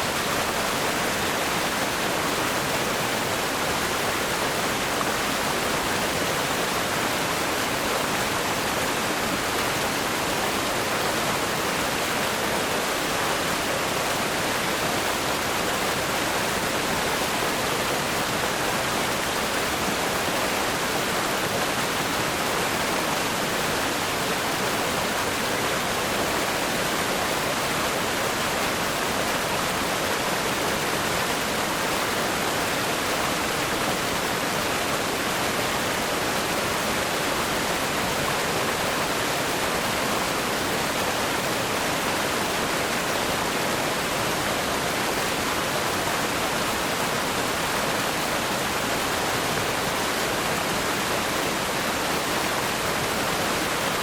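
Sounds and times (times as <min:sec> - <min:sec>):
river rapids rushing over rocks: 0:00.0 - 0:54.0.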